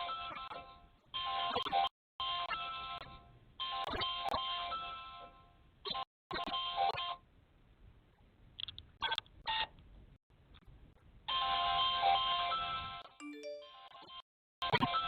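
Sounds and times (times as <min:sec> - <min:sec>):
intercom ringing tune: 0:13.2 - 0:14.0.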